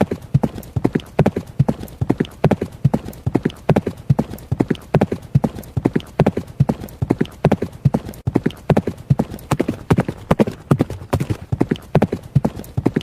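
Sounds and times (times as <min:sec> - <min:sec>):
horse hooves galloping: 0:00.0 - 0:13.0.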